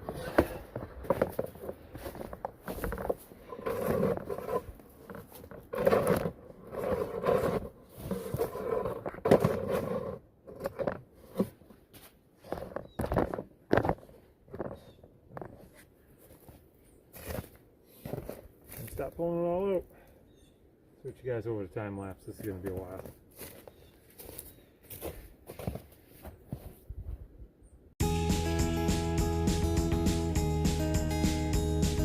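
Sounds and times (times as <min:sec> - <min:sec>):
debris rustling and scraping: 0:00.0 - 0:19.1.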